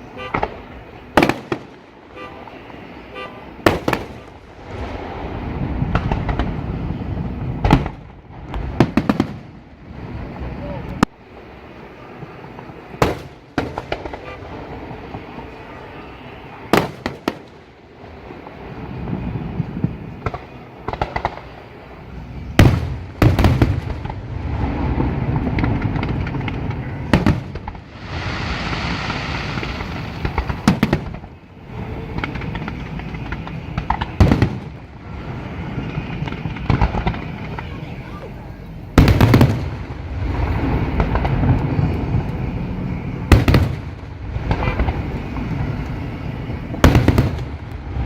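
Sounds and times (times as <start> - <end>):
fireworks hissing: 0.0 - 48.0
rolling rumble and crackle: 0.0 - 48.0
firework shells bursting: 3.6 - 6.8, 22.6 - 38.1, 38.9 - 48.0.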